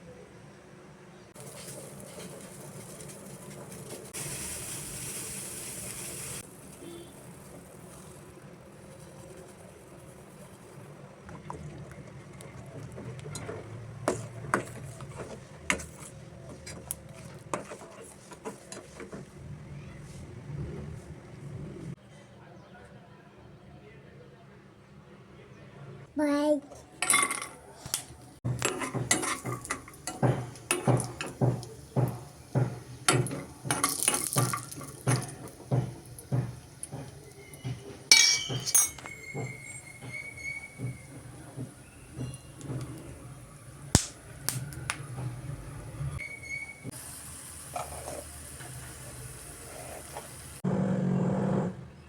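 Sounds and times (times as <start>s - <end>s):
utensils clinking against dishes: 28.5s - 41.4s.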